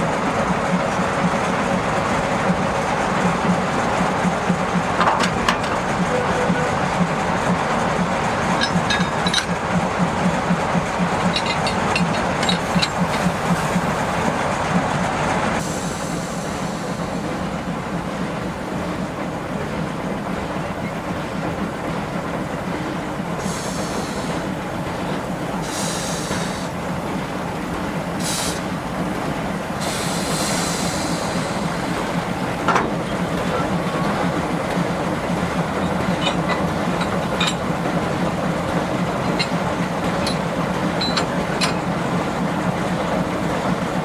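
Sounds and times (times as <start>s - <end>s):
train wheels rumbling on rails: 0.0s - 44.0s
high-pitched wheel squeal: 41.0s - 41.8s.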